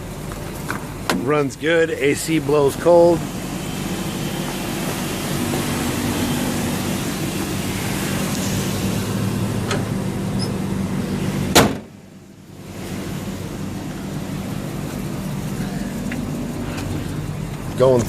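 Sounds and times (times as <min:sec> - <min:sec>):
truck engine idling: 0:00.0 - 0:18.0
air conditioning blower: 0:02.4 - 0:12.0
vehicle door shutting: 0:07.3 - 0:12.0.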